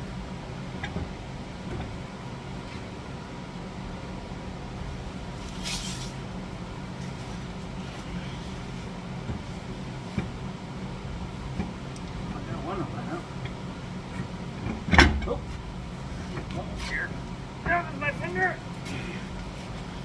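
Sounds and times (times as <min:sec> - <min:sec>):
brief hiss: 0:05.5 - 0:06.2.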